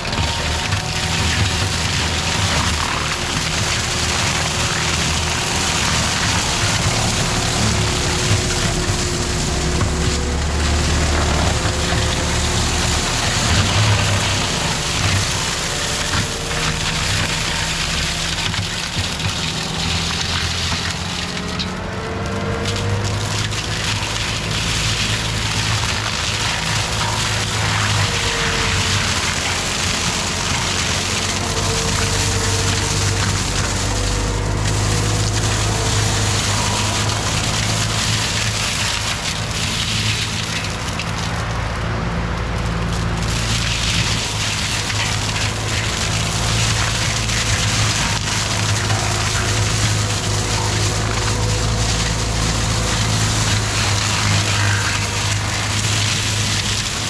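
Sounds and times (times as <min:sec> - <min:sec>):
diesel engine running hard: 0:00.0 - 0:57.0
mulcher grinding through brush: 0:00.0 - 0:57.0.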